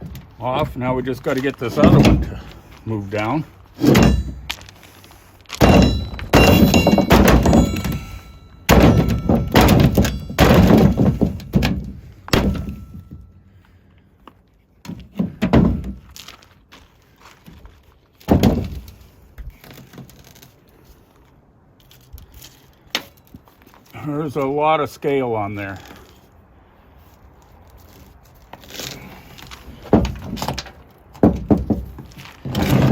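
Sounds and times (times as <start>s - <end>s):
heavy blows on steel rim: 3.8s - 4.6s, 5.6s - 13.5s.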